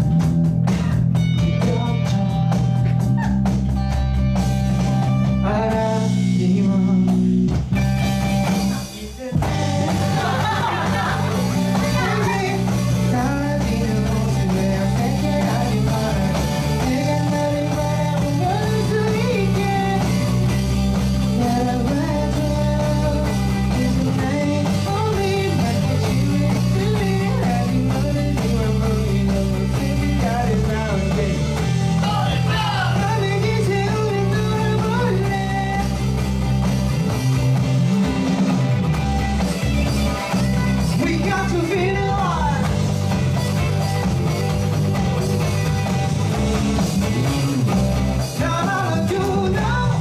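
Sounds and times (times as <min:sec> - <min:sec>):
bass line: 0:00.0 - 0:50.0
guitar: 0:00.0 - 0:50.0
person singing: 0:08.7 - 0:20.4, 0:21.3 - 0:36.0, 0:40.9 - 0:42.8, 0:48.4 - 0:50.0.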